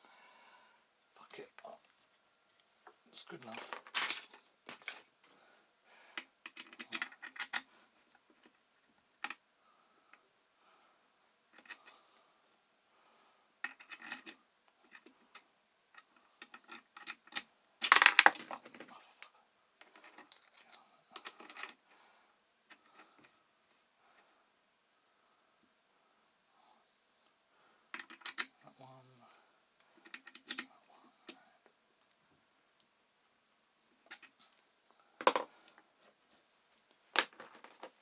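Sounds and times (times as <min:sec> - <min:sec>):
metal tools clicking and clinking: 0:03.4 - 0:05.2, 0:17.8 - 0:18.9
ringing metal clatter: 0:18.0 - 0:18.7.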